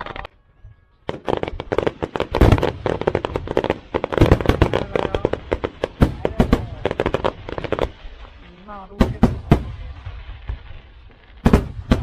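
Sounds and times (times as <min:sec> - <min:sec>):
fireworks cracking and banging: 0:00.0 - 0:12.0.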